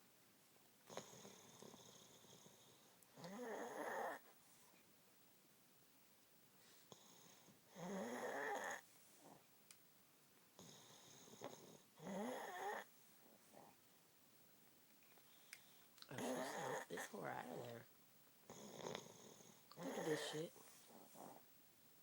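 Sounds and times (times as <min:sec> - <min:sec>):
woman snoring: 0:03.2 - 0:04.2, 0:07.8 - 0:08.8, 0:11.4 - 0:12.9, 0:16.1 - 0:17.8, 0:18.5 - 0:21.4
soft breathing: 0:06.6 - 0:07.7, 0:15.1 - 0:17.0, 0:19.0 - 0:21.5.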